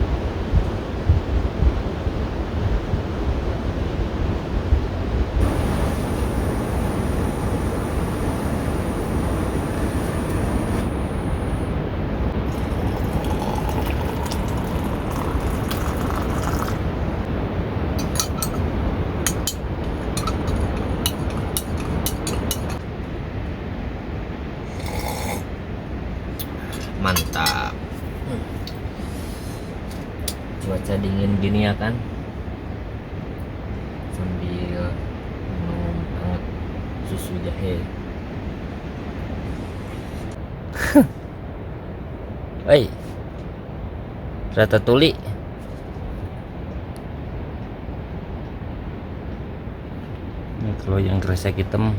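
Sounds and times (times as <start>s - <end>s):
low rumbling noise: 0.0s - 40.4s
sharp clicks and clinks: 18.0s - 18.7s, 19.3s - 22.8s.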